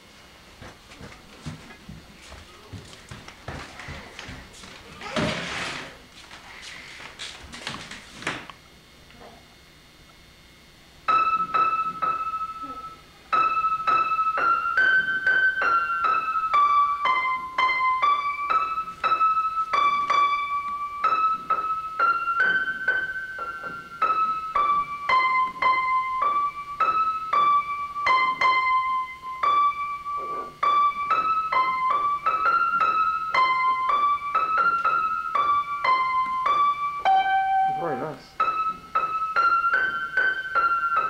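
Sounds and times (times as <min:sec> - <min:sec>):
piano melody: 0:11.0 - 0:41.0.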